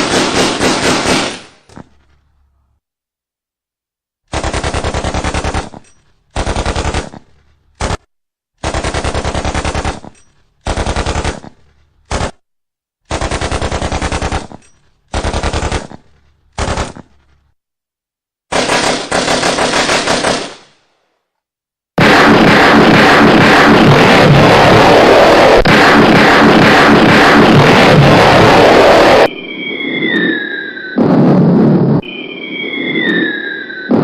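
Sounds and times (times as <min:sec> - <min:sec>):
machine-gun bursts echoing: 0:00.0 - 0:01.5, 0:04.3 - 0:07.1, 0:08.6 - 0:11.4, 0:13.1 - 0:16.0, 0:18.5 - 0:20.7.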